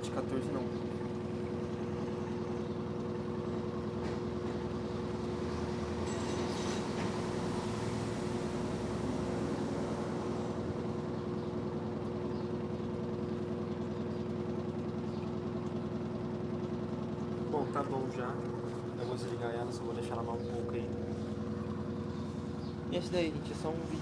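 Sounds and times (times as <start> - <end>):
washing machine motor hum: 0.0 - 24.0
water sloshing: 16.6 - 24.0.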